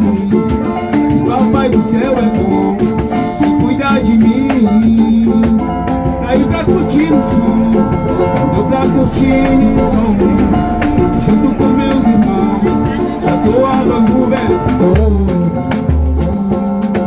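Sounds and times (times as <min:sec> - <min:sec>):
deep drum beats: 0:00.0 - 0:17.0
samba music: 0:00.0 - 0:17.0.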